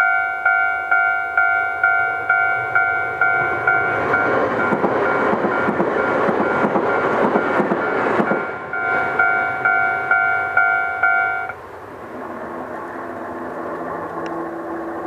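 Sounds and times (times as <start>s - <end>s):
level crossing bell ringing: 0.0s - 4.7s, 7.9s - 11.6s
train rumble and wheel clatter: 0.0s - 15.0s.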